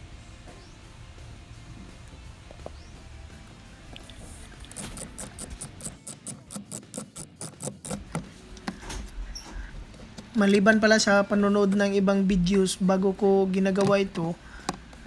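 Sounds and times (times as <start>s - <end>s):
ratchet wrench clicking: 4.5s - 9.4s.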